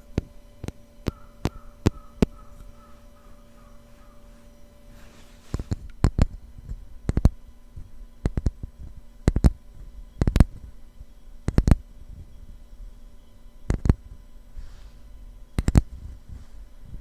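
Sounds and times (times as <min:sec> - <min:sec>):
low steady hum: 0:00.0 - 0:17.0
soft rustle of handling: 0:03.4 - 0:05.9, 0:14.5 - 0:17.0.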